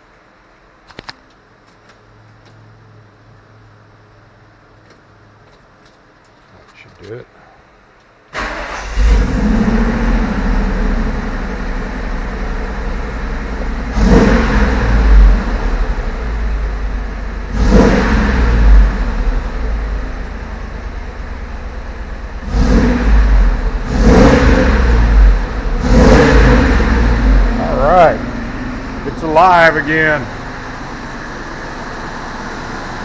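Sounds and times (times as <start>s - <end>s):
truck engine idling and revving: 8.4s - 33.0s.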